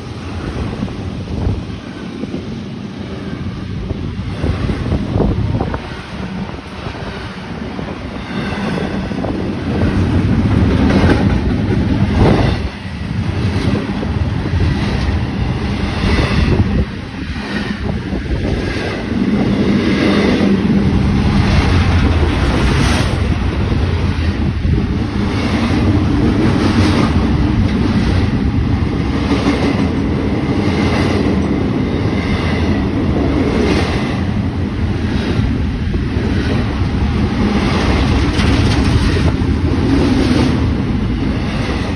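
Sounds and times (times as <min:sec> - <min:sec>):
train rumbling past: 0:00.0 - 0:41.9
wind buffeting microphone: 0:00.0 - 0:41.9
wheels clattering over rail joints: 0:08.5 - 0:31.5, 0:33.3 - 0:41.9.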